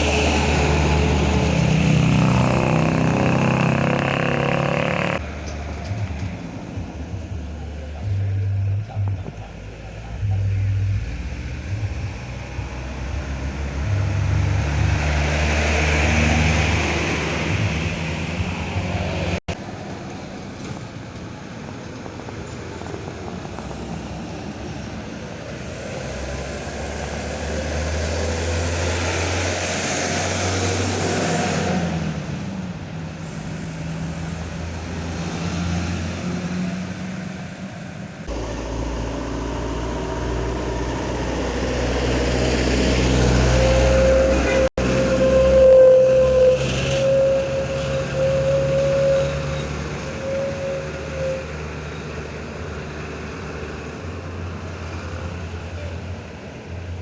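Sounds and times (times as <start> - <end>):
buses and trucks passing: 0.0 - 57.0.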